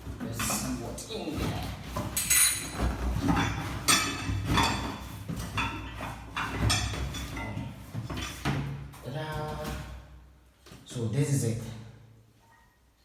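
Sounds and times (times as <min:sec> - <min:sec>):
scrapes and light knocks: 0:00.0 - 0:10.0.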